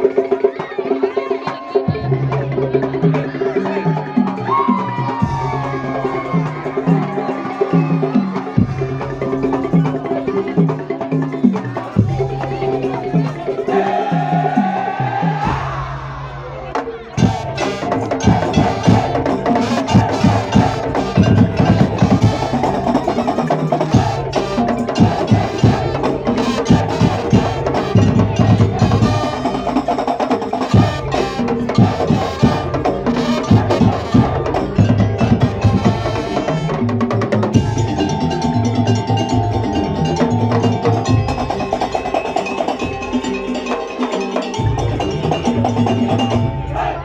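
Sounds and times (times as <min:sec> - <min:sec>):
wooden slit drums and drums: 0:02.8 - 0:47.0
ringing bell-like tones: 0:37.5 - 0:46.9.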